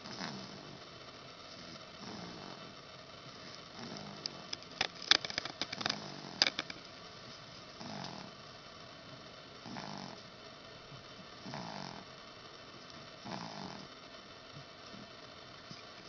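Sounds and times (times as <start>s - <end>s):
soft snoring: 0.0s - 0.8s, 1.6s - 2.7s, 3.4s - 4.5s, 7.8s - 8.4s, 9.6s - 10.2s, 11.4s - 12.1s, 13.2s - 14.0s
sharp clicks and ticks: 4.2s - 6.8s.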